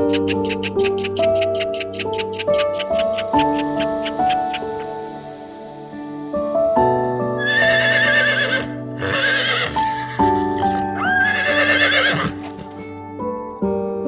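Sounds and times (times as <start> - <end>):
background music: 0.0 - 14.0
horse whinnying: 7.4 - 12.8.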